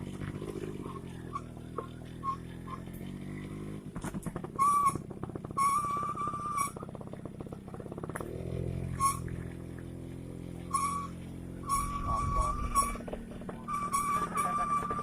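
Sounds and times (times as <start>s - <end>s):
small motorcycle engine running: 0.0s - 15.0s
high steady tone: 10.7s - 13.0s.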